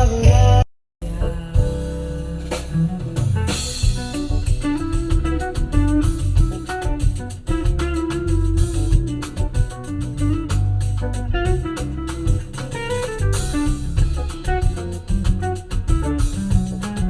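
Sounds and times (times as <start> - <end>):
drum kit: 0.0 - 17.0
plucked guitar: 0.0 - 17.0.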